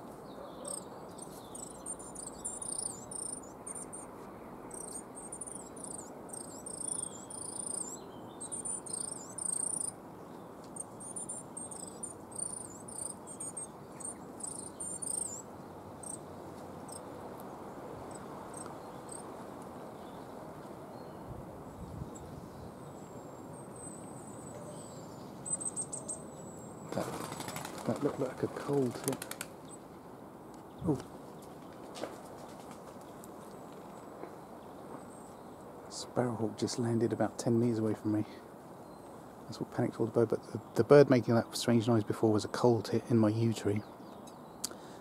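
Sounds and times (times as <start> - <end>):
bird high-pitched call notes: 0.4 - 4.1.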